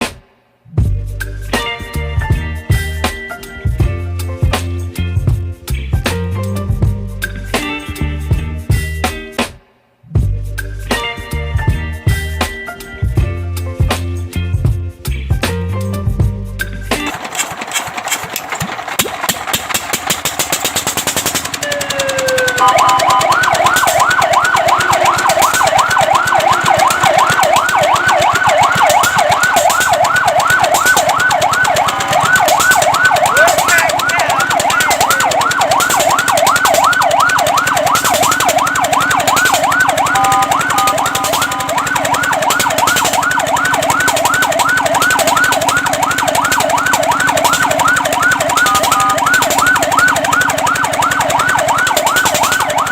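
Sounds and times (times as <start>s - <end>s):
fast mechanical clatter: 16.9s - 52.9s
fire truck siren yelping: 17.0s - 52.9s.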